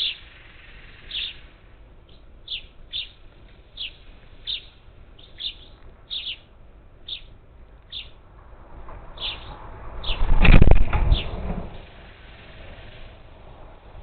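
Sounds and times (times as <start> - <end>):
parakeets calling: 0.0 - 8.2, 9.1 - 10.4
loud rushing noise: 8.3 - 14.0.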